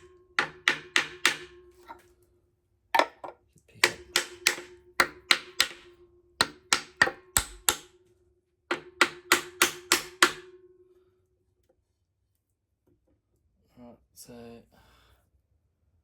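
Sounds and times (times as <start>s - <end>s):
hammer tapping on metal: 0.0s - 2.0s, 3.0s - 8.0s, 8.7s - 10.7s.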